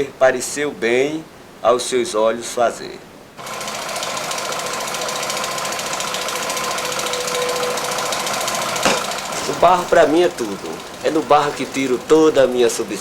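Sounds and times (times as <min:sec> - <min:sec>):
machine rattling and humming: 0:03.4 - 0:13.0.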